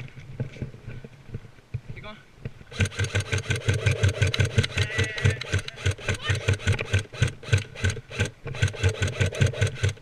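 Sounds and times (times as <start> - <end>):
kit rattling: 2.7 - 10.0.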